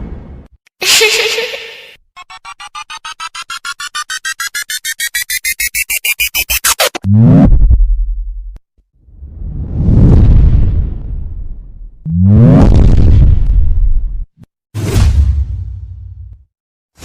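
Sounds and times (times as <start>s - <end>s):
rising electronic beeps: 2.2s - 7.6s
deep bass boom with falling sweep: 7.2s - 14.3s.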